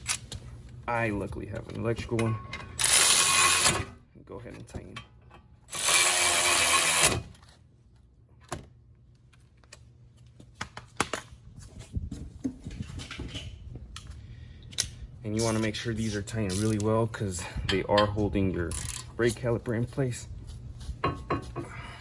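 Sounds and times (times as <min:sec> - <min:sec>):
electric ratchet running: 0:02.8 - 0:03.9, 0:05.7 - 0:07.3.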